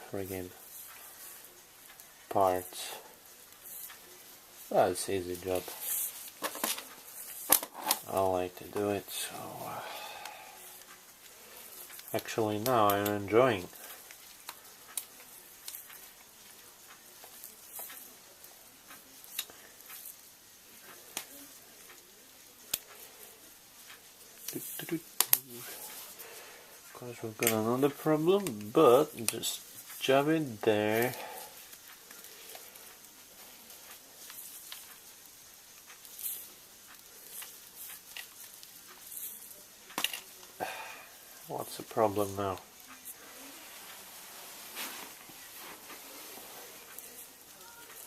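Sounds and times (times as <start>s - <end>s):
small parts and tools clicking: 0.2s - 9.2s, 10.6s - 26.3s, 27.2s - 43.3s
small parts scraping: 0.2s - 9.8s, 29.1s - 40.6s.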